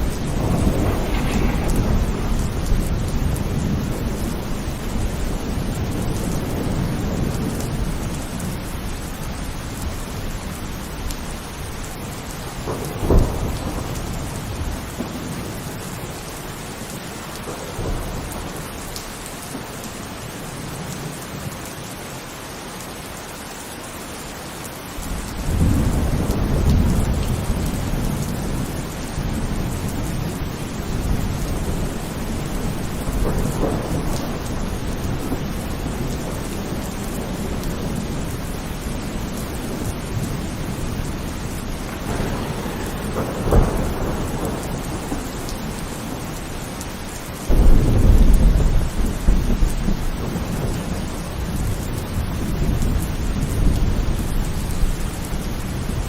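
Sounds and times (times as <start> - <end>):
thunder rumbling: 0.0 - 21.4, 25.0 - 56.0
heavy rain falling: 0.0 - 56.0.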